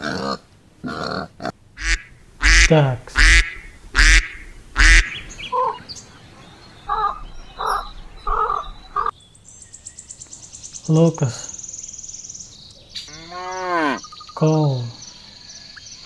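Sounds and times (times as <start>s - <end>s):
ducks quacking: 1.8s - 9.1s.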